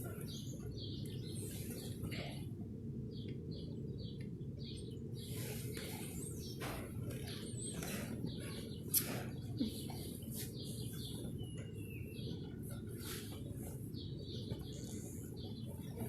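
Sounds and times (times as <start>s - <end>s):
low background rumble: 0.0s - 16.0s
small birds chirping: 0.0s - 16.0s.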